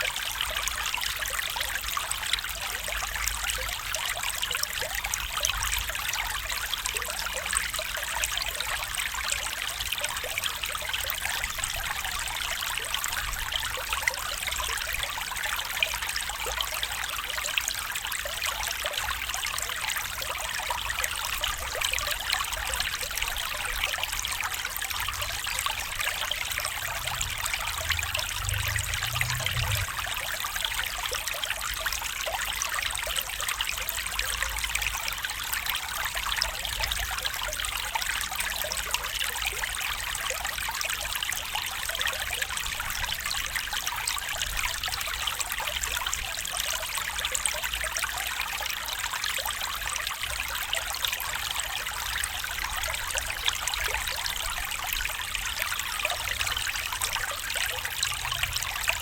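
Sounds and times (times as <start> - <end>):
stream trickling: 0.0 - 59.0
faint low rumble: 25.2 - 30.6.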